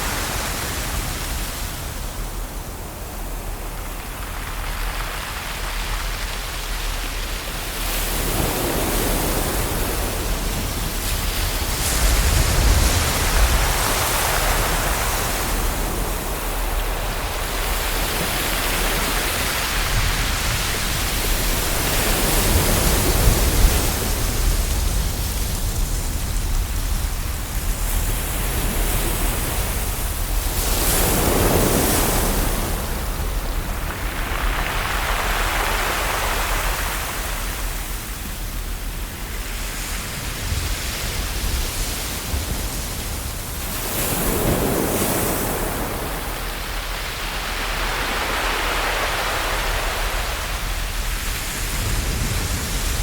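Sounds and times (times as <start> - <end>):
ocean waves: 0.0 - 53.0.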